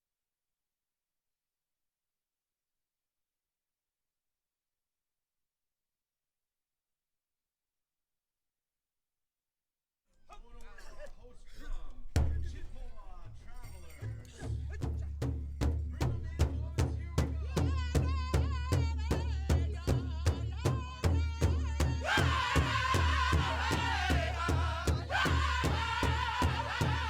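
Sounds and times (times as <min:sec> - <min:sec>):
deep drum beating: 0:15.0 - 0:27.0.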